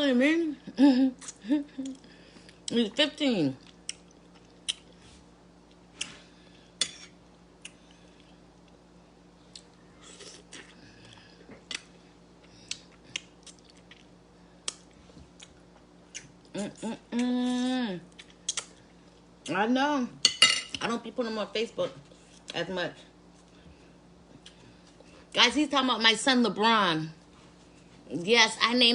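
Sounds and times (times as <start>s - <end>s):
chewing and smacking: 3.6s - 6.1s, 9.5s - 16.5s, 18.1s - 19.3s.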